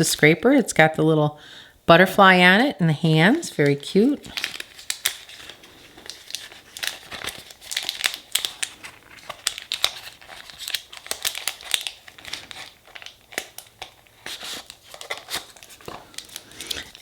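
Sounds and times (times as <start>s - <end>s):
packaging crinkling and rustling: 3.4s - 17.0s
small clicks and crackles: 4.2s - 17.0s.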